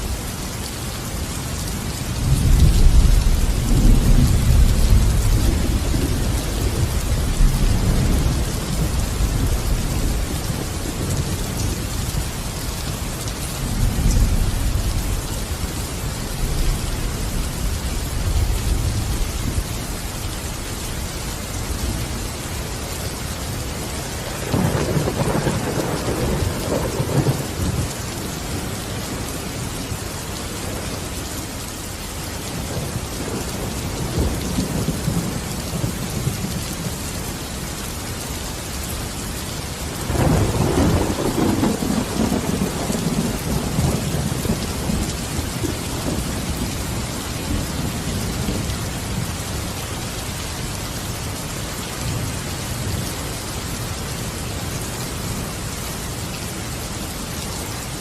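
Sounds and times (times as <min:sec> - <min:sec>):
steady rain: 0:00.0 - 0:58.0
thunder rumbling: 0:02.2 - 0:12.5, 0:23.8 - 0:30.0, 0:40.0 - 0:49.3.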